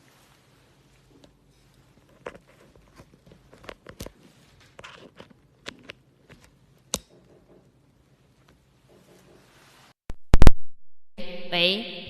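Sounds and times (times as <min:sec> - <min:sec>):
handling clicks and knocks: 0:01.2 - 0:09.5.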